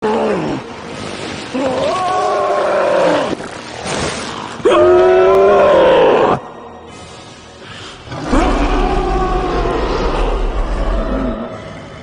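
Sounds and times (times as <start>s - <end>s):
pitched monster roars: 8.1s - 12.0s.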